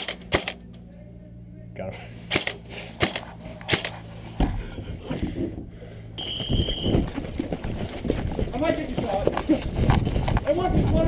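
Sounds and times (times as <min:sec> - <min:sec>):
airsoft gun shots: 0:00.0 - 0:00.6, 0:02.3 - 0:04.0
high steady beep: 0:06.2 - 0:07.0
rustling and knocking of movement: 0:06.9 - 0:11.0.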